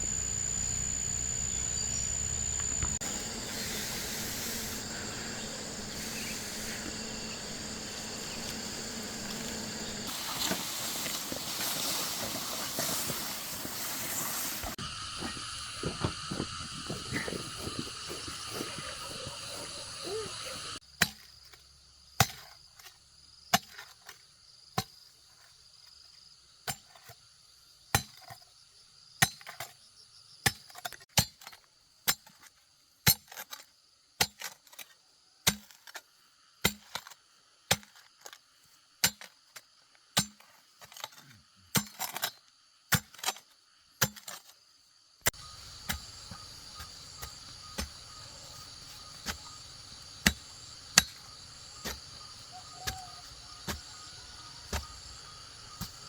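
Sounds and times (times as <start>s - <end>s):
insects chirping: 0.0s - 31.1s, 31.8s - 56.0s
hand tool striking bamboo: 40.2s - 40.5s, 49.1s - 56.0s.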